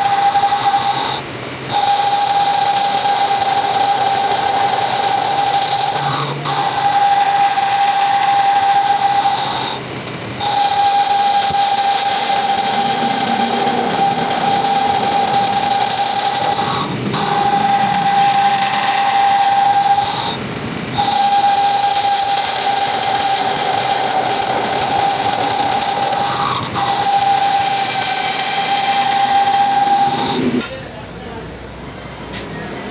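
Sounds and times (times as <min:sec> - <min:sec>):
machine cutting metal whine: 0:00.0 - 0:31.0.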